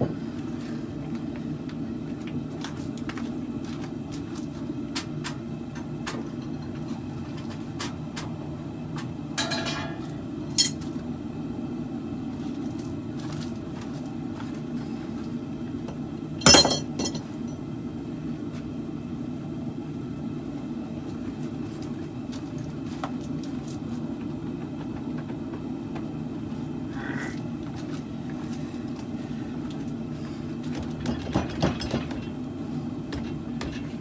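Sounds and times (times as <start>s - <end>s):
forge burner roar: 0.0s - 34.0s
ringing metal clinks: 16.4s - 17.2s.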